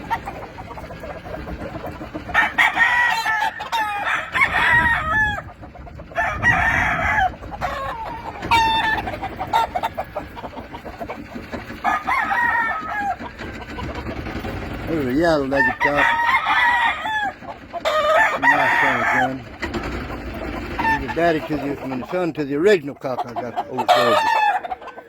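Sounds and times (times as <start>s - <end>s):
roosters crowing: 0.0s - 25.0s.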